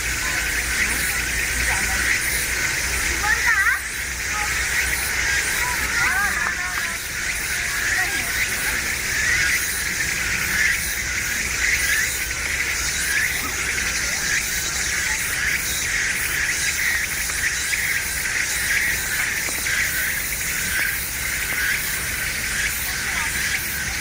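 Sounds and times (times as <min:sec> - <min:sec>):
insects chirring: 0:09.3 - 0:23.6.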